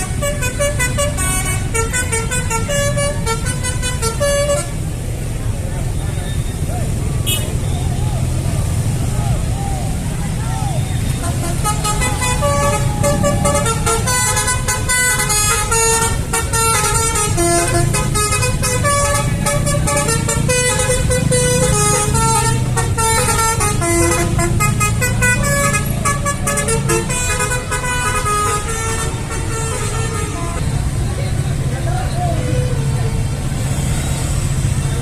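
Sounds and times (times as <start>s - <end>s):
multi-tone air horn melody: 0.0s - 4.8s, 11.1s - 30.8s
bus engine rumble: 0.0s - 35.0s.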